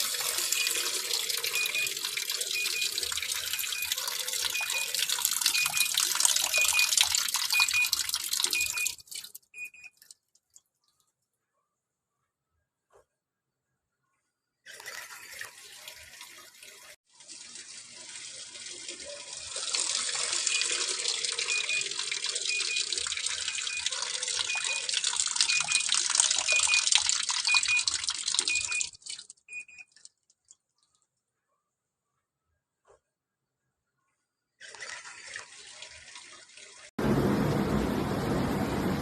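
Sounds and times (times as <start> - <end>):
water rushing into washing machine: 0.0 - 10.2, 14.7 - 30.0, 34.6 - 39.0.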